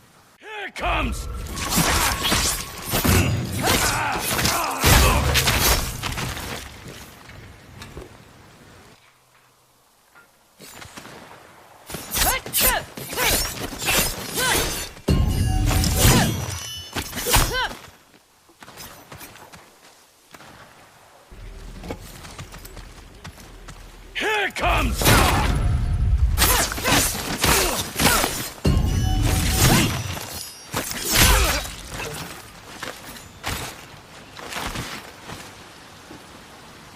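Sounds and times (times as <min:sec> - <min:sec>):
steel blades clashing: 0:26.4 - 0:32.2.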